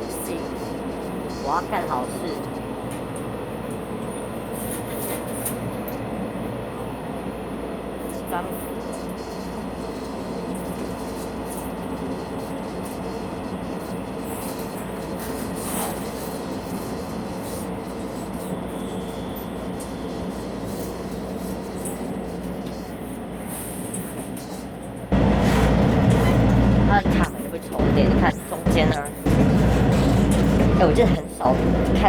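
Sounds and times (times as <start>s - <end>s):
train wheels rumbling on track: 9.9s - 32.0s.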